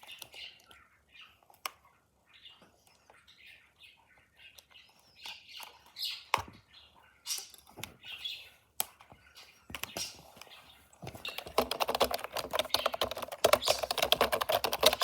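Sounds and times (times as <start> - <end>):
packaging crinkling and clicking: 11.1 - 15.0.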